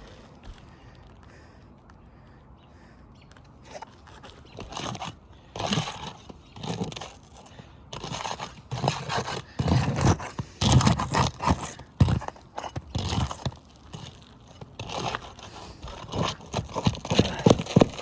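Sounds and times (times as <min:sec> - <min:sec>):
roof shingles scraping and crunching: 0:03.6 - 0:18.0.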